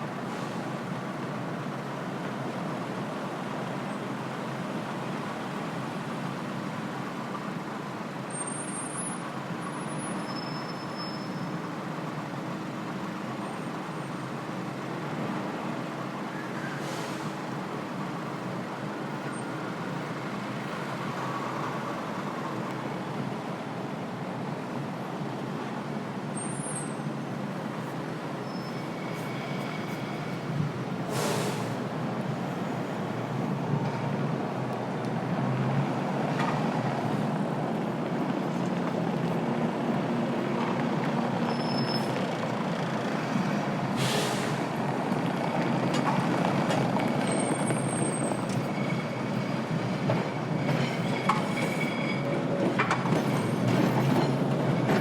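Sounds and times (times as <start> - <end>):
street traffic passing: 0.0 - 55.0
faint high squeaks: 28.4 - 30.5, 50.6 - 52.5
short hiss: 31.1 - 31.8, 44.0 - 44.6.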